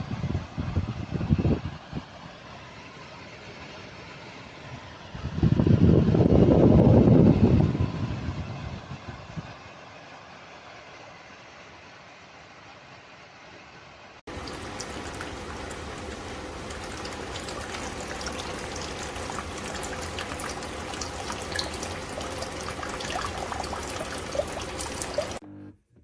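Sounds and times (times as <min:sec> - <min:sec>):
steady low hum: 0:14.3 - 0:25.4
water trickling and splashing: 0:14.3 - 0:25.4.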